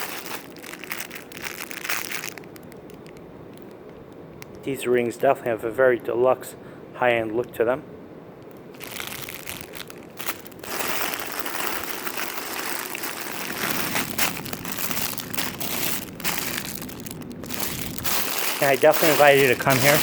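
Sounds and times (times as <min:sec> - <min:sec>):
packaging crinkling: 0:00.0 - 0:04.6, 0:08.8 - 0:20.0.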